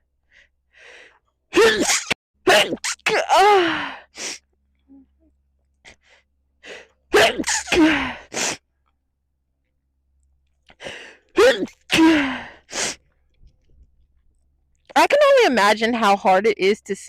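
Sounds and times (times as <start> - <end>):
person sneezing in helmet: 1.6 - 3.8, 7.1 - 8.6.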